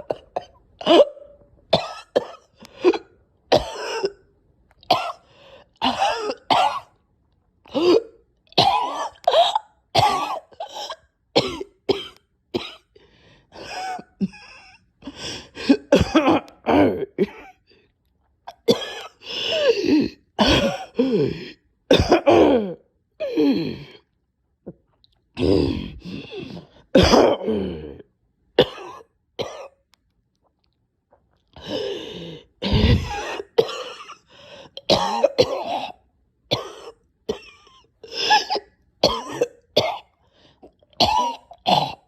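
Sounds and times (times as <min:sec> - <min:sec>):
person coughing: 0:00.0 - 0:04.2, 0:05.8 - 0:06.9, 0:07.8 - 0:12.8, 0:15.6 - 0:17.6, 0:18.6 - 0:22.8, 0:25.4 - 0:28.0, 0:28.6 - 0:29.8, 0:32.6 - 0:40.0, 0:41.0 - 0:42.0
person choking: 0:25.4 - 0:28.0, 0:32.6 - 0:34.0.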